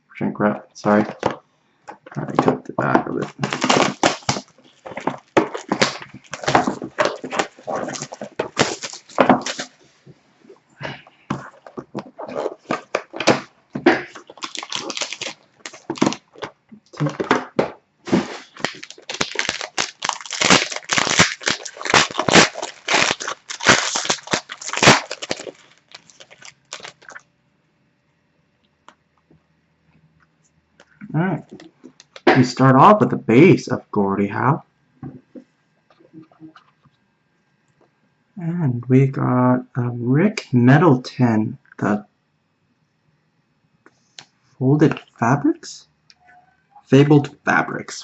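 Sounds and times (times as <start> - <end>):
plastic crinkling: 0.9 - 10.2, 11.3 - 27.3, 31.4 - 32.3
plastic wrap being torn: 3.1 - 9.8, 11.3 - 17.3, 18.1 - 27.2.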